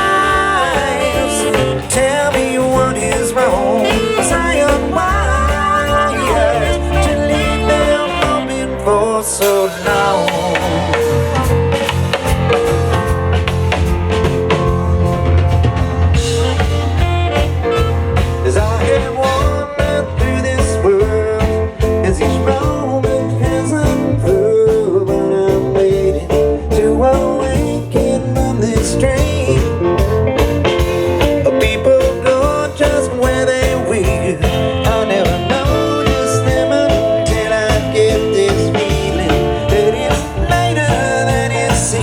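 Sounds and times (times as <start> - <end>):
steady drum beat: 0.0 - 8.7, 9.4 - 42.0
guitar with bending melodic lines: 0.0 - 42.0.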